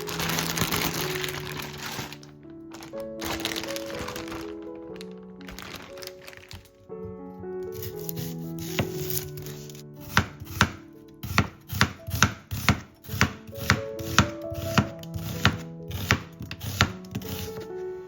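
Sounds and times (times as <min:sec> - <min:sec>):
knife chopping on cutting board: 0:07.8 - 0:09.2, 0:10.0 - 0:17.7.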